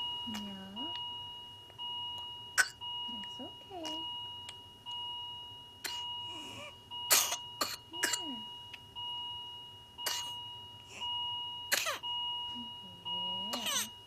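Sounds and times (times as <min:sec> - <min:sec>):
baby coughing in bursts: 0:02.6 - 0:02.8, 0:05.8 - 0:06.1, 0:07.1 - 0:08.4, 0:10.0 - 0:10.4, 0:11.7 - 0:12.0, 0:13.5 - 0:13.9.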